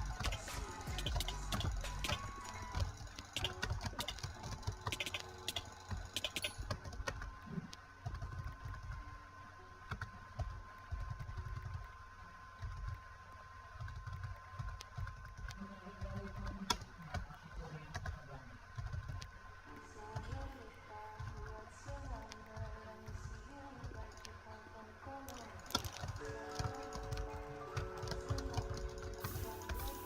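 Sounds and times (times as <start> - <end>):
computer mouse clicking: 0.0 - 9.0.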